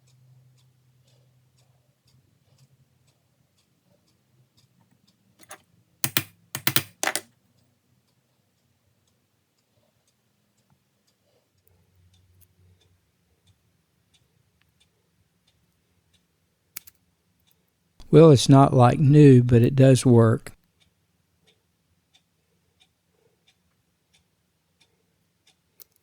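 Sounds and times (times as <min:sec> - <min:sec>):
faint regular ticking: 0:00.0 - 0:18.0, 0:20.6 - 0:26.0
metal latch clicking: 0:05.4 - 0:07.2.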